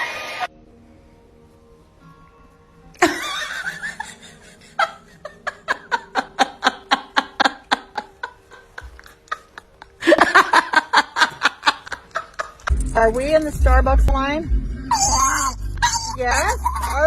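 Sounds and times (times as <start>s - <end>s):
person laughing hard: 3.0s - 12.7s.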